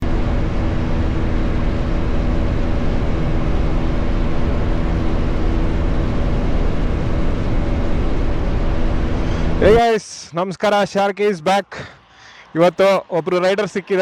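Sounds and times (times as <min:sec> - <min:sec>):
motorcycle engine running: 0:00.0 - 0:09.8.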